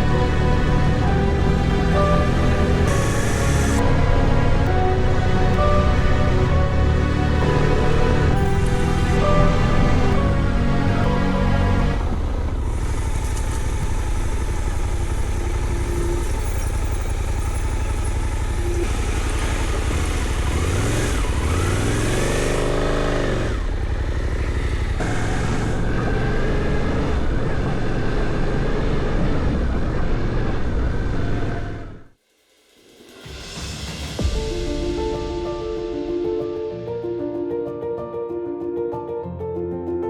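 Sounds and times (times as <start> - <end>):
road noise: 0.0 - 32.1
motorcycle engine running: 12.0 - 32.1.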